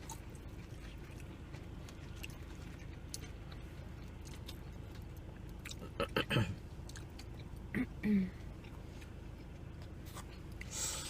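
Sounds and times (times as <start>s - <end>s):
faint chewing of food: 0.0s - 7.7s, 8.3s - 11.0s
low background hum: 0.0s - 11.0s.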